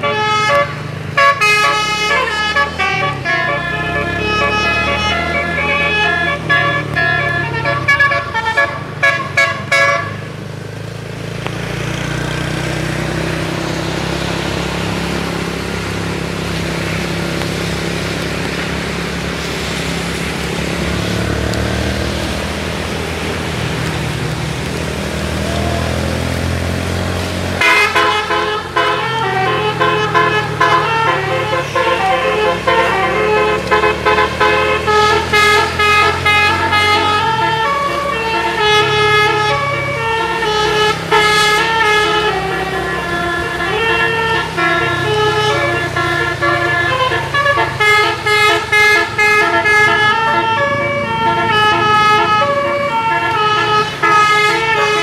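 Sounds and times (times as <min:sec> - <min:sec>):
bus air horn melody: 0:00.0 - 0:10.4, 0:25.4 - 0:55.0
heavy engine running: 0:00.0 - 0:55.0
road noise: 0:00.0 - 0:55.0.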